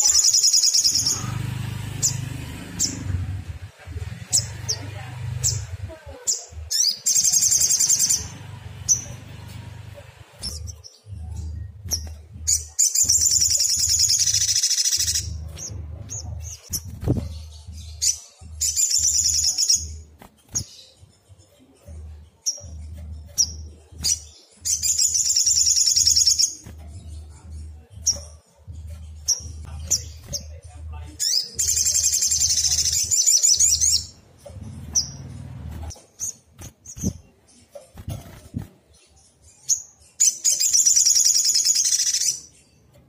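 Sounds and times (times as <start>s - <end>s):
low hum: 15.0s - 18.8s.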